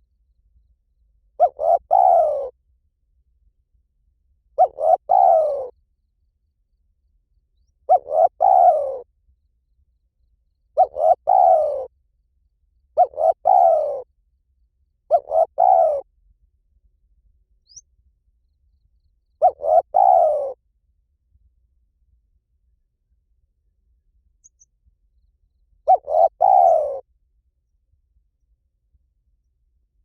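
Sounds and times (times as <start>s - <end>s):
dove cooing: 1.4s - 2.6s, 4.6s - 5.8s, 7.9s - 9.1s, 10.8s - 11.9s, 13.0s - 14.1s, 15.1s - 16.1s, 19.4s - 20.6s, 25.8s - 27.1s.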